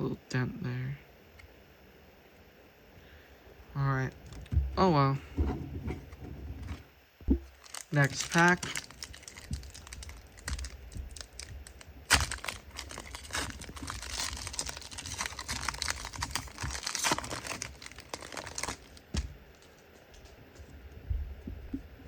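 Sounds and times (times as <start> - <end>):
wrapper tearing and crinkling: 7.5 - 19.7.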